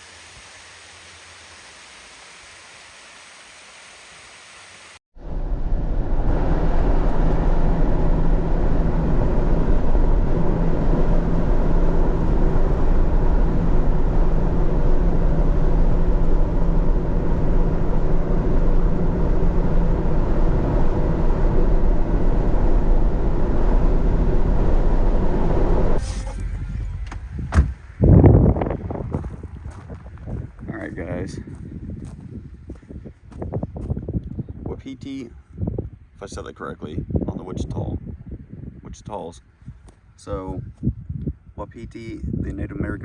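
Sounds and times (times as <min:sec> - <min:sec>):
car road and engine noise: 0:05.2 - 0:31.0
sharp knocks: 0:26.2 - 0:27.9.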